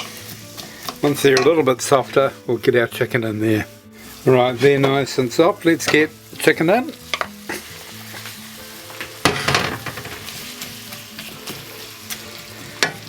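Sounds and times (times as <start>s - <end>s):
chicken sizzling in hot oil: 0.0s - 13.0s.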